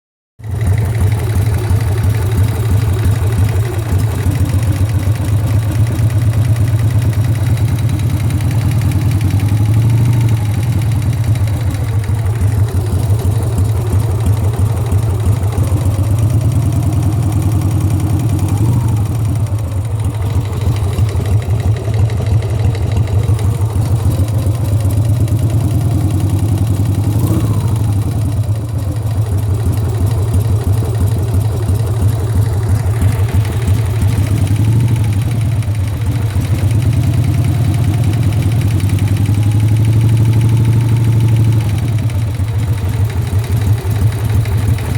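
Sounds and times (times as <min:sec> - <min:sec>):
engine knocking: 0:00.4 - 0:44.9
motorcycle engine idling: 0:00.4 - 0:44.9.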